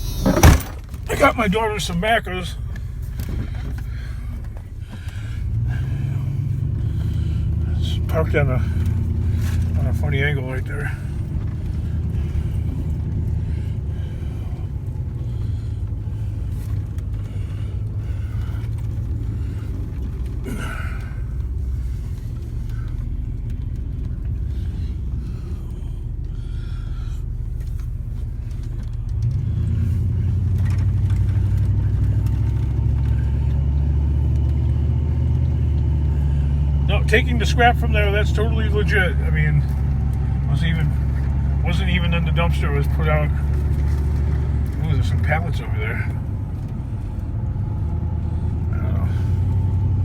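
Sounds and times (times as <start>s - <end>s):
vehicle engine and road rumble: 0.0s - 50.0s.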